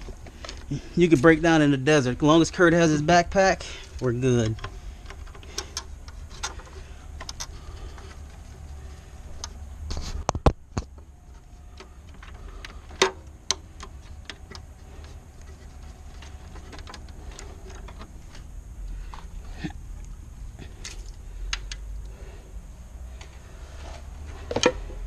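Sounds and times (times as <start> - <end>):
low steady hum: 0.0 - 25.0.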